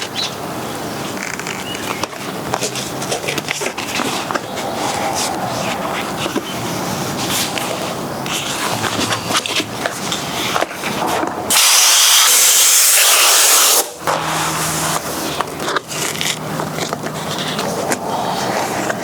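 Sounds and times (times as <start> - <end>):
scraping and rubbing: 2.2 - 12.4
loud steady hiss: 10.3 - 15.5.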